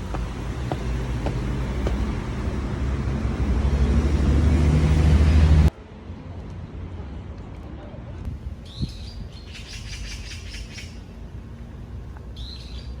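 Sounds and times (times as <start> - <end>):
vehicle engine rumbling: 0.0 - 9.4.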